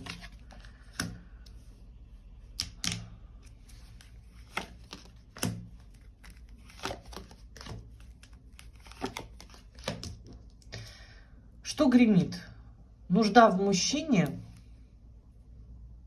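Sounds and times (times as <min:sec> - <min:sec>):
cards snapping and flicking: 0:04.4 - 0:10.2.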